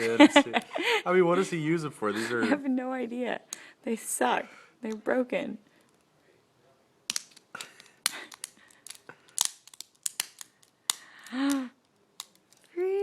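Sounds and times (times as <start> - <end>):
metal handcuffs clicking: 7.1 - 12.8.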